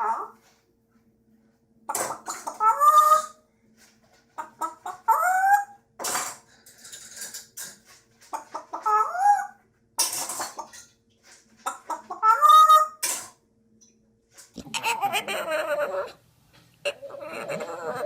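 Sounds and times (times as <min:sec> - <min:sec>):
animal squawking: 0:00.0 - 0:00.4, 0:14.6 - 0:16.2, 0:16.8 - 0:18.0.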